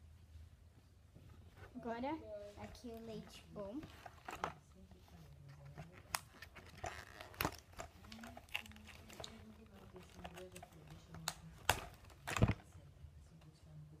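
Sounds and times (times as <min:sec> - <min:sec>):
packaging crinkling: 0:05.8 - 0:12.7.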